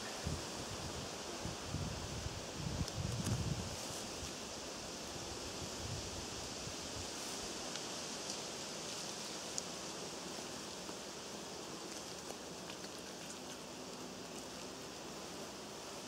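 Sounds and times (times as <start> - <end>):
outdoor background hiss: 0.0 - 16.0
faint ticks: 9.5 - 9.7, 11.8 - 14.6.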